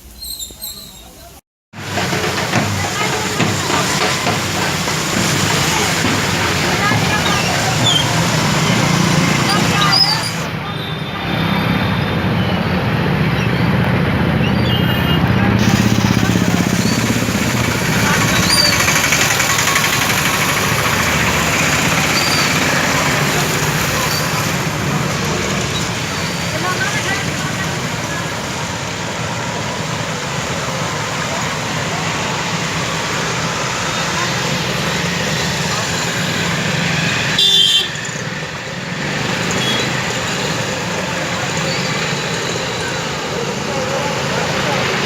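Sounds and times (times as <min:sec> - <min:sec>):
road traffic noise: 0:00.0 - 0:45.0
vehicle engines running: 0:01.8 - 0:45.0
loud steady hiss: 0:15.6 - 0:45.0
vehicle horn toot: 0:37.4 - 0:38.1, 0:39.6 - 0:40.0.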